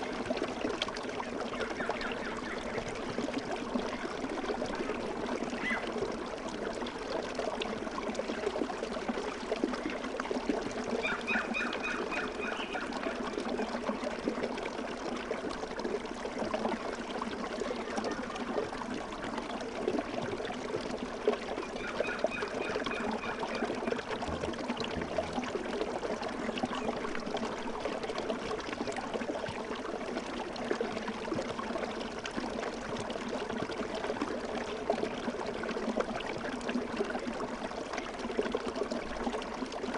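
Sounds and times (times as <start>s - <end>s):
stream trickling and splashing: 0.0s - 39.9s
bird calling: 5.6s - 5.8s.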